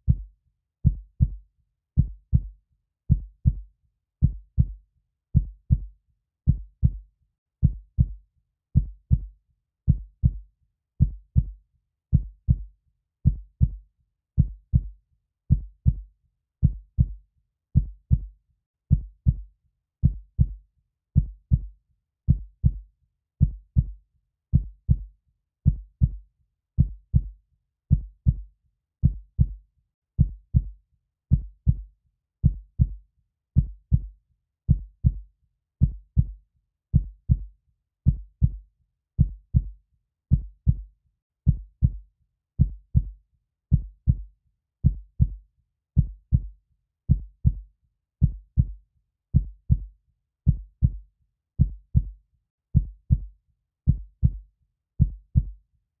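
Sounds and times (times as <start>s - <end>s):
heartbeat thumps: 31.3s - 31.8s, 32.4s - 33.0s, 33.6s - 34.1s, 38.1s - 38.6s, 39.2s - 39.7s, 40.3s - 40.8s, 41.5s - 42.0s, 42.6s - 43.1s, 43.7s - 44.2s, 44.8s - 45.4s, 46.0s - 46.5s, 47.1s - 47.6s, 48.2s - 48.8s, 49.4s - 49.9s, 50.5s - 51.0s, 51.6s - 52.1s, 52.8s - 53.3s, 53.9s - 54.4s, 55.0s - 55.5s.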